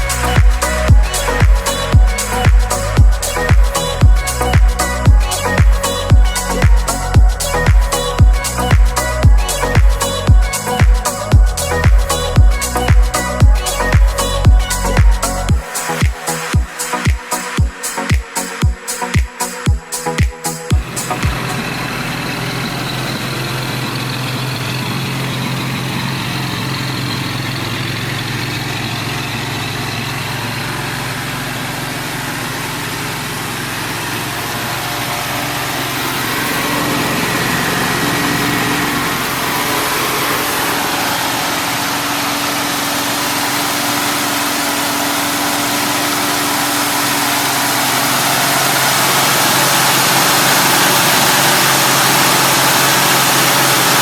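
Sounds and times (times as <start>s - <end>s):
car engine idling: 0.0s - 18.0s, 19.4s - 54.0s.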